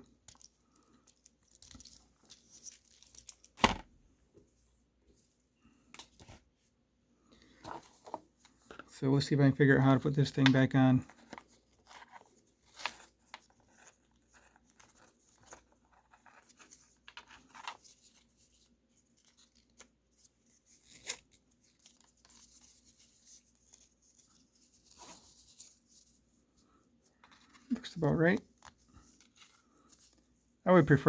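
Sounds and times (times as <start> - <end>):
nylon strap rustling and scraping: 7.4 - 8.9, 11.0 - 30.6.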